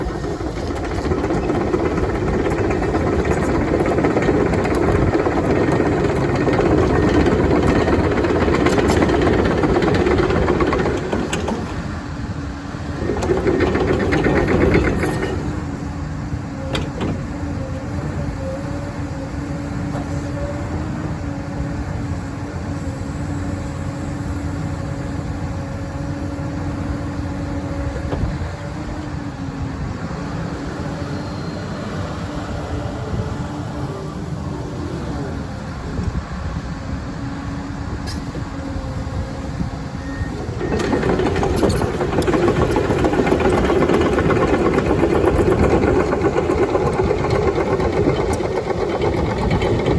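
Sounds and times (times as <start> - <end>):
excavator diesel engine: 0.0 - 49.9
metal clanks: 40.5 - 49.9.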